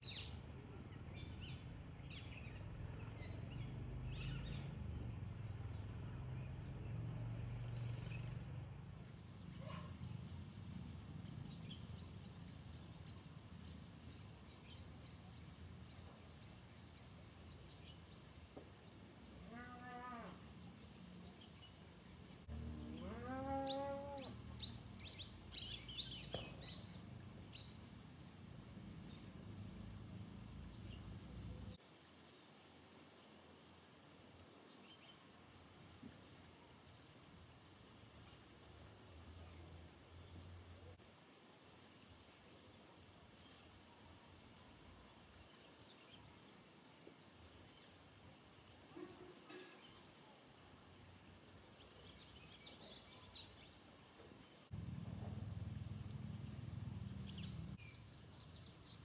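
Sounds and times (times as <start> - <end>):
low steady hum: 0.0 - 31.8, 54.5 - 59.0
bird chirping: 7.6 - 18.7, 20.7 - 32.3, 51.2 - 59.0.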